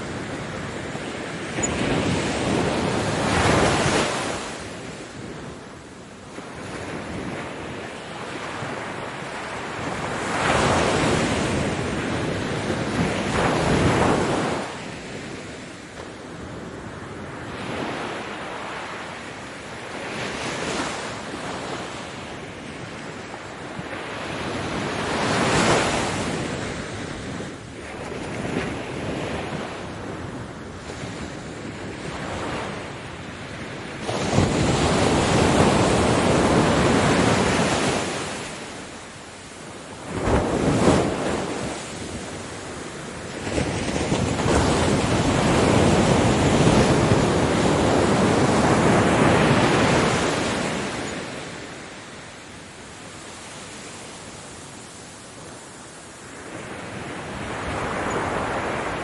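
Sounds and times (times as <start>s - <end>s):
ocean waves breaking on beach: 0.0s - 59.0s.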